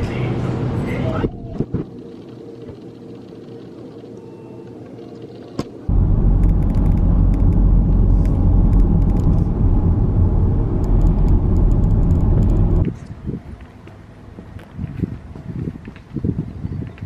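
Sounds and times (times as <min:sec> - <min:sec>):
vehicle low rumble: 0:05.8 - 0:13.7.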